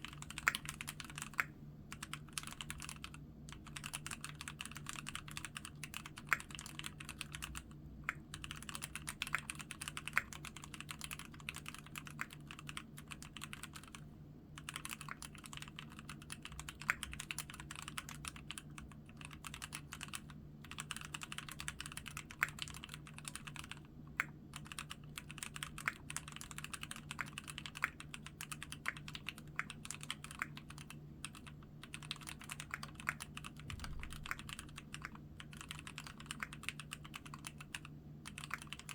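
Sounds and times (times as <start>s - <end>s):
mechanical keyboard typing: 0.0s - 14.0s, 14.6s - 38.9s.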